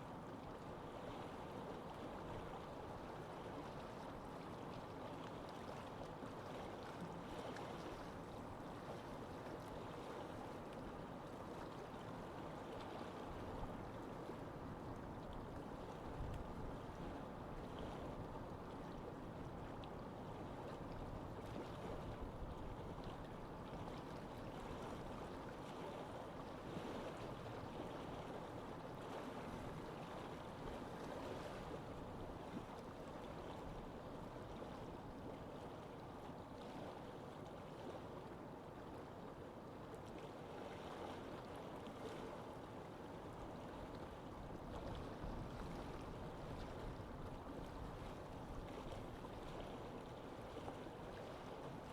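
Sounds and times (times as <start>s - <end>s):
moving water: 0.0s - 51.9s
wind: 0.0s - 51.9s
water lapping splashes: 0.2s - 51.9s.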